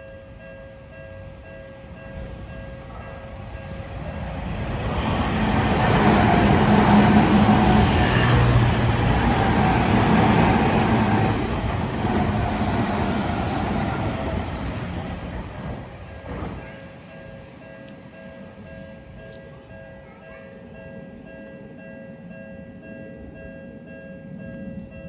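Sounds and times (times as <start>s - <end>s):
crossing alarm bell ringing: 0.0s - 14.9s
train wheels rumbling on rails: 0.9s - 17.8s
train motor hum: 3.3s - 16.7s.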